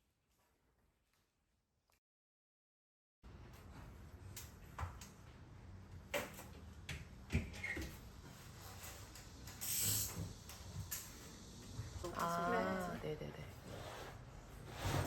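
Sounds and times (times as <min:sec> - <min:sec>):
brief hiss: 0:09.6 - 0:10.3.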